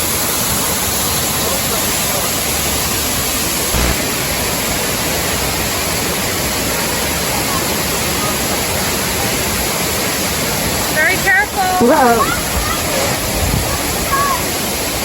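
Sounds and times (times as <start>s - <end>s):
waterfall rushing: 2.1s - 15.0s.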